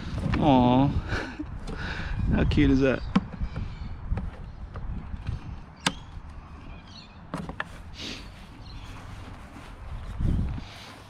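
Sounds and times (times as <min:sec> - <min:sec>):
sharp clicks and knocks: 0:03.0 - 0:06.2.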